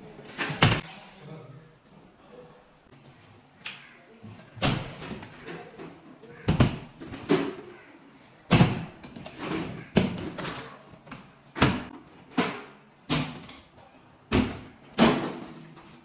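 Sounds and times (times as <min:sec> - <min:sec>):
cabinet doors banging shut: 0:00.4 - 0:00.8, 0:08.5 - 0:10.4.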